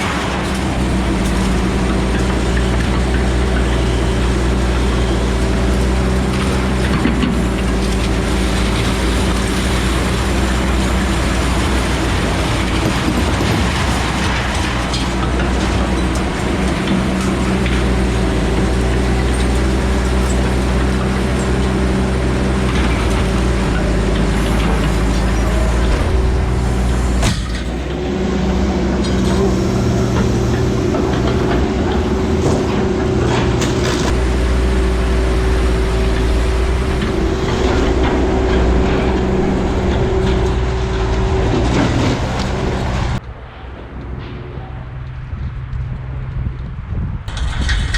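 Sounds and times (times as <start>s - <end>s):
truck engine droning: 0.0s - 47.9s
road noise hiss: 13.9s - 46.9s.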